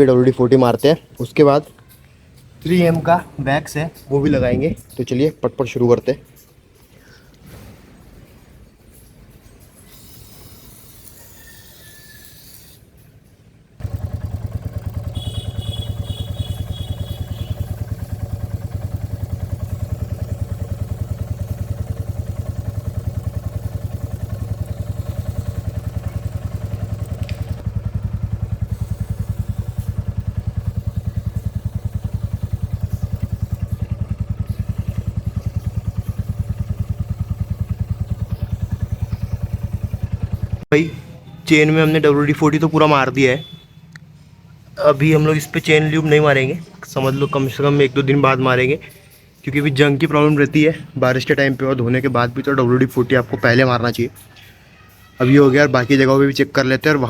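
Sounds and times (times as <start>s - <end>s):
motorcycle engine idling: 13.8s - 41.3s.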